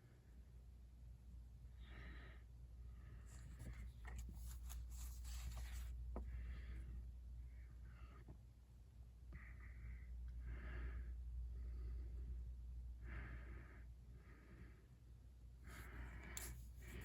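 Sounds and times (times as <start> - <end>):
low steady hum: 0.0 - 17.0
paper banknotes rustling: 3.4 - 6.0.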